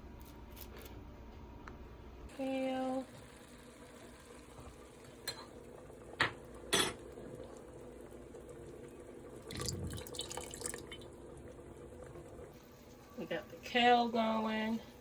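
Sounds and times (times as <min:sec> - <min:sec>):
cookware clinking and clattering: 0:05.2 - 0:05.6, 0:06.2 - 0:07.2.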